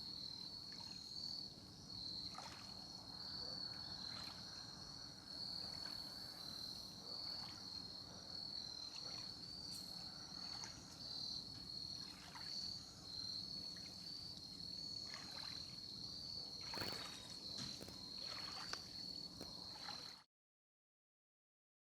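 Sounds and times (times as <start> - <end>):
crickets chirring: 0.0 - 20.2
brief scrapes or splashes: 16.6 - 20.2.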